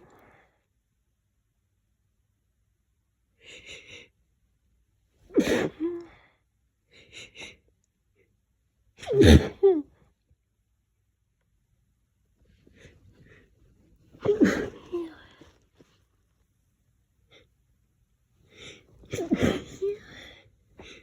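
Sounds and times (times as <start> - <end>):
person sneezing: 5.3 - 6.0, 9.0 - 9.8, 14.2 - 15.5, 19.1 - 20.4.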